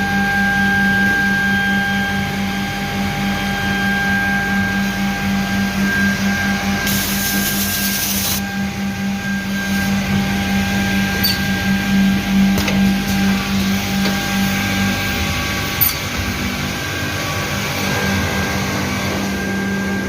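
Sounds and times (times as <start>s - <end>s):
hiss: 6.9s - 8.4s
machine motor hum: 8.4s - 20.0s.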